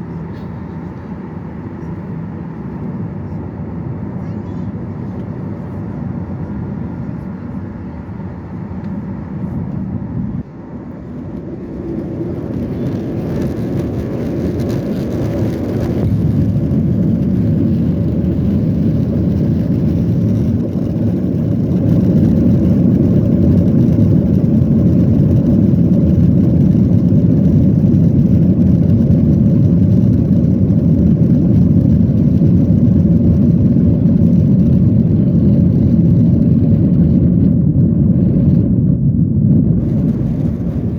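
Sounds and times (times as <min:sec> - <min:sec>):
jet engines spooling up: 0:00.0 - 0:40.9
airframe noise: 0:35.4 - 0:40.9.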